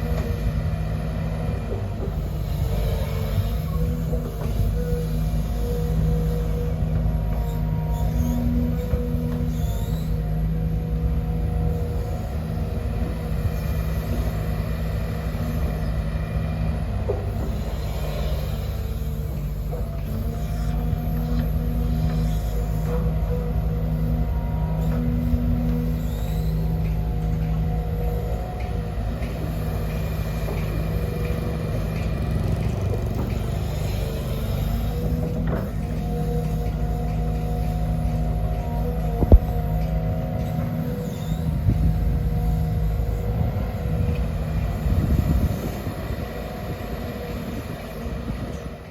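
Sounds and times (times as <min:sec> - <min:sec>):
excavator diesel engine rumbling: 0:00.0 - 0:48.9
brief squeak: 0:07.4 - 0:10.2.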